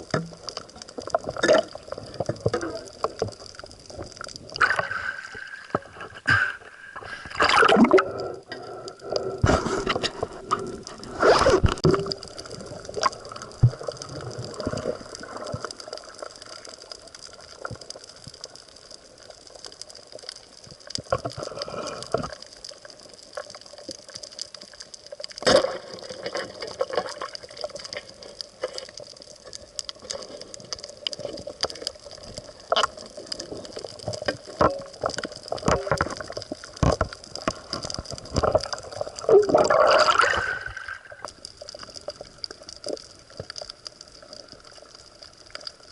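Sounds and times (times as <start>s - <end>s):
water sloshing and gurgling: 0.0s - 18.7s, 20.6s - 45.9s
water rushing: 6.8s - 8.2s, 38.4s - 41.3s.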